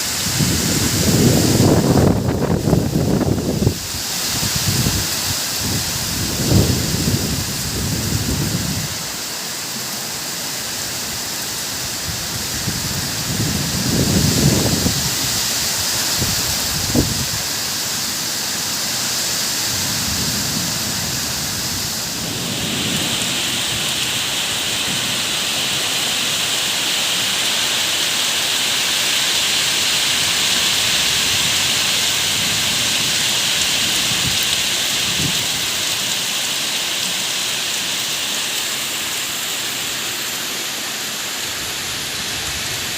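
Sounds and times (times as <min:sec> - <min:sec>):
rain falling: 0:00.0 - 0:42.9
thunder rumbling: 0:04.6 - 0:09.0, 0:19.7 - 0:25.2.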